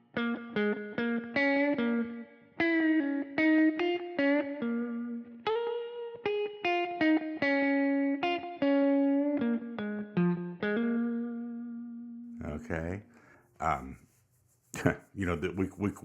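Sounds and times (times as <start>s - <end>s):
electric guitar single notes: 0.1s - 12.3s.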